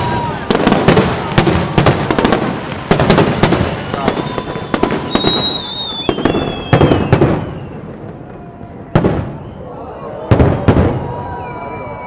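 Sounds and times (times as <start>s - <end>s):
firework bangs and crackling: 0.0s - 12.0s
firework whistles sliding down: 3.2s - 8.0s, 8.6s - 12.0s.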